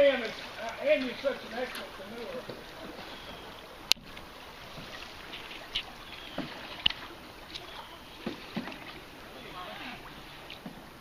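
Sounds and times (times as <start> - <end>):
paddle knocking canoe: 0.0 - 11.0
paddle splashes: 0.0 - 11.0.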